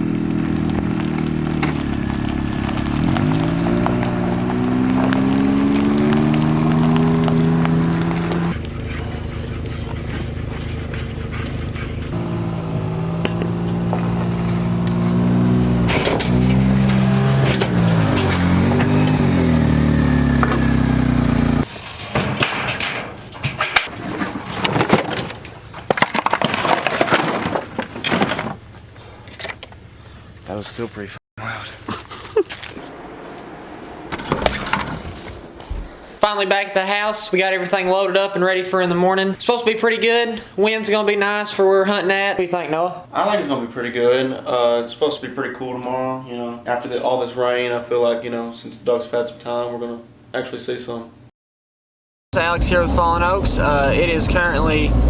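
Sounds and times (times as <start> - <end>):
vehicle engine accelerating: 0.0 - 21.7, 32.7 - 36.1, 52.4 - 55.0
rustling: 6.4 - 12.2
knocks and clatter: 13.0 - 28.6.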